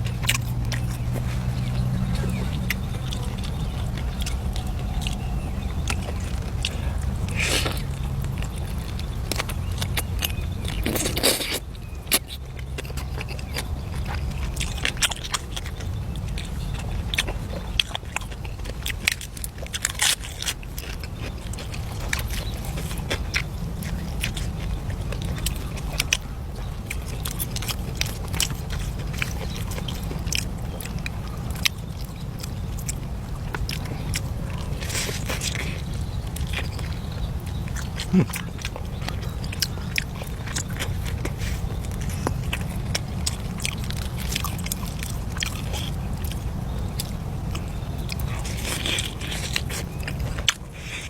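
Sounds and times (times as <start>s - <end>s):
low rumble: 0.0s - 10.9s
crunching and chewing: 0.0s - 51.0s.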